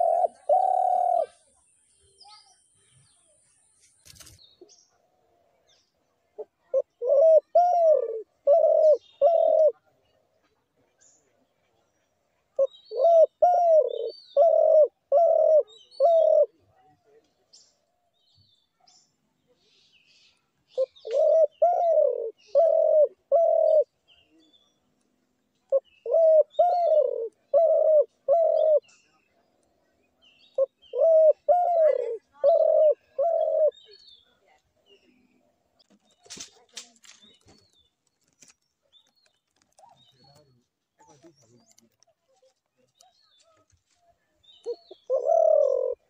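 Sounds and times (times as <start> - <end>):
dove cooing: 0.0 - 1.4, 6.4 - 9.8, 12.6 - 16.6, 20.8 - 23.9, 25.7 - 29.0, 30.6 - 34.0, 44.6 - 46.0
faint bird chirps: 0.0 - 46.0.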